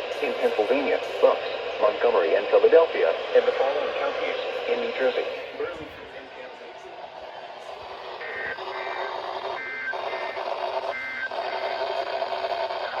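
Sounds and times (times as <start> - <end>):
radio receiver hiss: 7.8 - 13.0.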